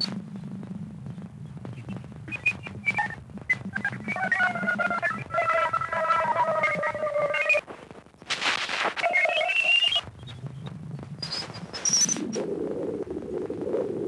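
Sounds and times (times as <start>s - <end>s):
low rumbling static: 0.0s - 14.0s
chirping whistle tones: 2.2s - 7.6s, 9.0s - 10.4s, 11.2s - 12.3s.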